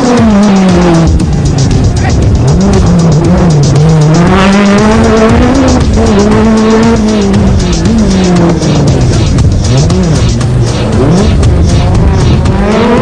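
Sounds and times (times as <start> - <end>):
engine crackles: 0.0 - 13.0
rally car engine at full throttle: 0.0 - 13.0.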